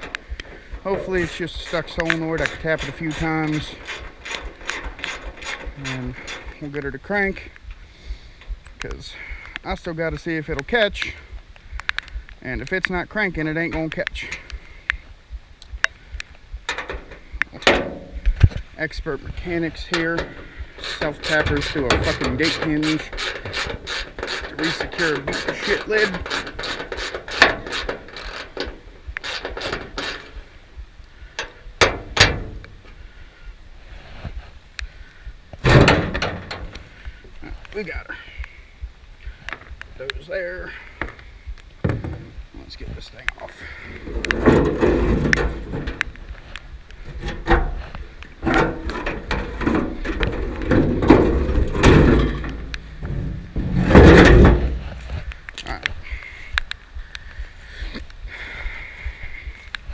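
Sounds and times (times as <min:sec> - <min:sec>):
screw driver rapid clicks: 0:22.5 - 0:28.4
metal lid knocking and rattling: 0:44.1 - 0:46.3, 0:48.4 - 0:54.8.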